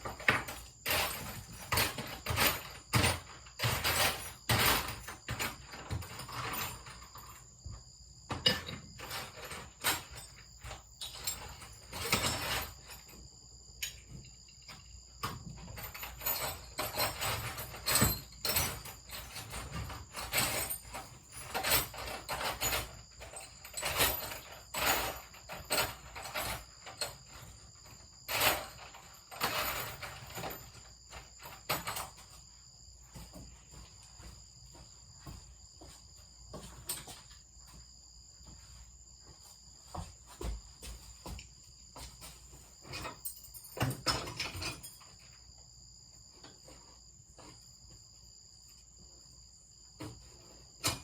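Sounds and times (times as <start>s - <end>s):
hard objects knocking and rattling: 0.0s - 7.5s, 13.8s - 32.4s.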